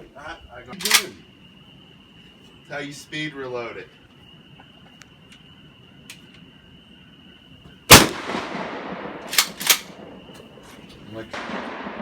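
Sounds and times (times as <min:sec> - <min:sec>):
gunshot echoing: 0:07.9 - 0:10.6, 0:11.3 - 0:12.0.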